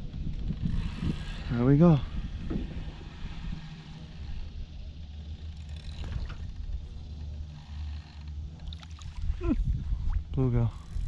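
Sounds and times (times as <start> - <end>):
boat motor humming: 0.0 - 11.0.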